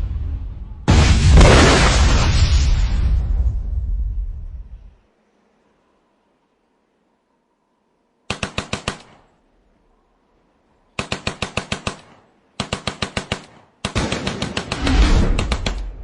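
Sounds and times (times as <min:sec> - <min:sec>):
automatic gunfire bursts: 0:08.3 - 0:09.4, 0:11.0 - 0:16.0.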